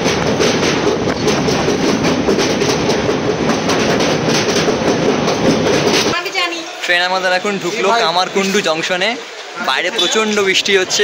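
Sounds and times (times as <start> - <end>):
wheels clicking over rail joints: 0.0 - 6.8
train rumbling: 0.0 - 11.0.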